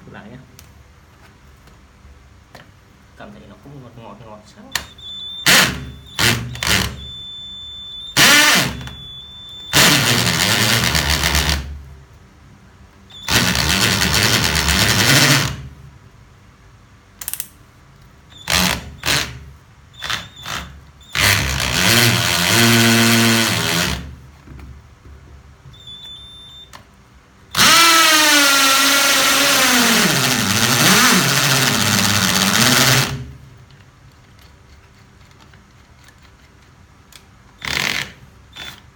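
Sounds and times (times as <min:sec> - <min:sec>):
hammer drill boring into concrete: 0:05.4 - 0:07.2, 0:08.2 - 0:09.1, 0:09.7 - 0:11.7, 0:13.2 - 0:15.6, 0:18.4 - 0:19.4, 0:20.0 - 0:24.0, 0:27.5 - 0:33.2, 0:37.6 - 0:38.8.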